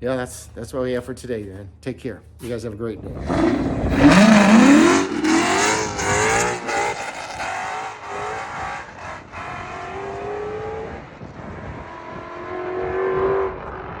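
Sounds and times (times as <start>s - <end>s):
car engine revving and accelerating: 3.0s - 14.0s.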